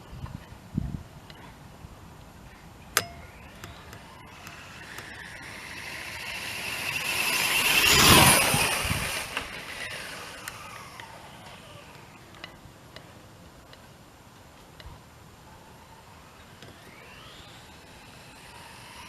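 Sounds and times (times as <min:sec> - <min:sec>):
rc car motor whine: 0:03.0 - 0:12.3, 0:15.7 - 0:19.0.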